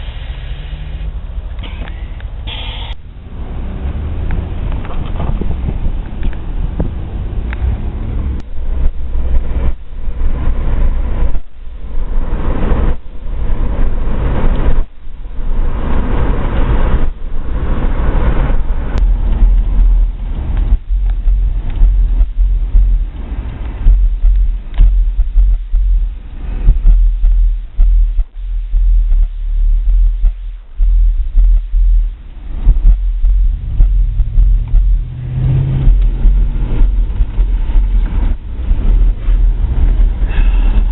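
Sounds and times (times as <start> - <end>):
loud bass-heavy music: 2.9 - 40.9.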